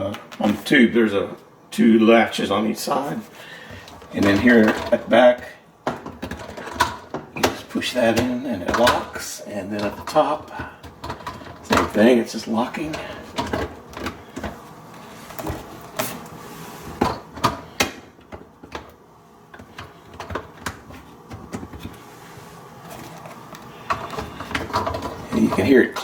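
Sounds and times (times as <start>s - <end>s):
plastic parts being handled: 19.5s - 26.0s.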